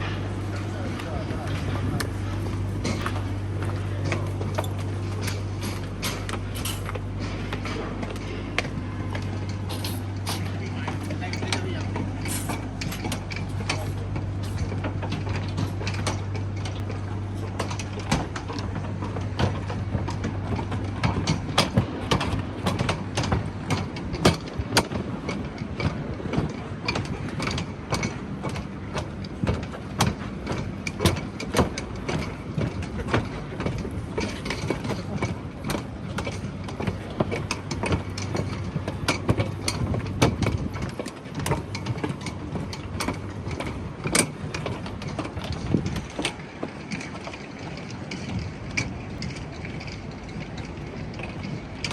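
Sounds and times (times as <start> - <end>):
general background noise: 0.0 - 51.9
low engine hum: 0.0 - 51.9.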